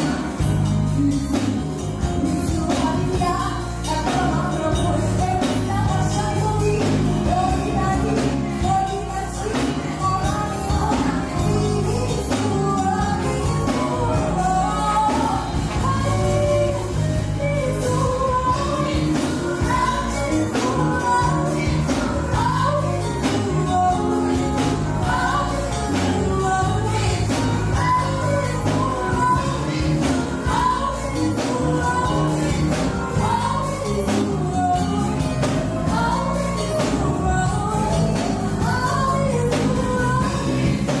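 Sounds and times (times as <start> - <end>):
gospel song with singing: 0.0 - 41.0.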